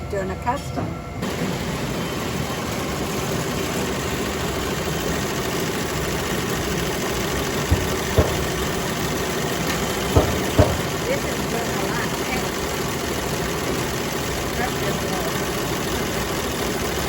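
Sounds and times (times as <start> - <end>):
machinery humming: 0.0 - 17.0
short sharp knocks: 7.7 - 8.6, 9.7 - 11.0.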